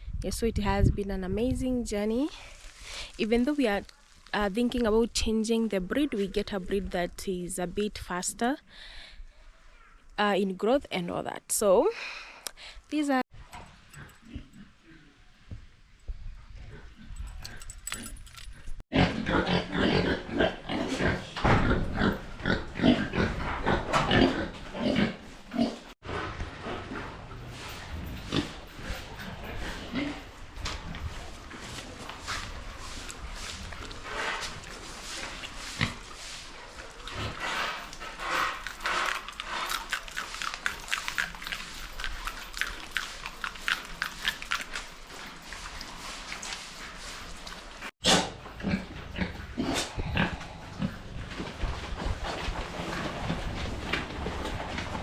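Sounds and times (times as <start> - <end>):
pigs grunting: 18.9 - 30.4, 48.0 - 51.3
pigs eating and chewing: 21.9 - 55.0.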